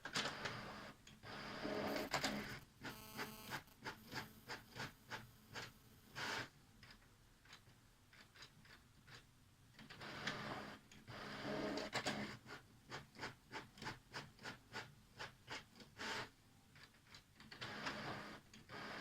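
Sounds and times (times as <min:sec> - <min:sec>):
rhythmic printer mechanical passes: 0:00.0 - 0:06.5, 0:17.6 - 0:19.0
faint printer ticks: 0:00.0 - 0:19.0
printer motor whirring: 0:00.2 - 0:04.9.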